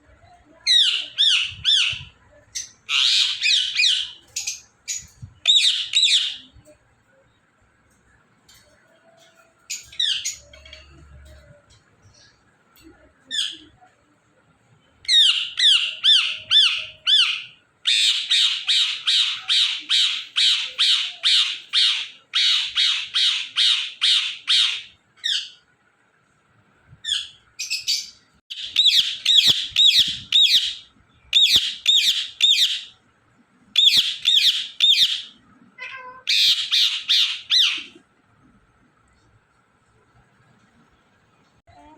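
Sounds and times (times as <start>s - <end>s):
parrot squawking: 2.9s - 4.2s, 15.1s - 25.6s, 27.0s - 32.9s, 33.8s - 38.0s.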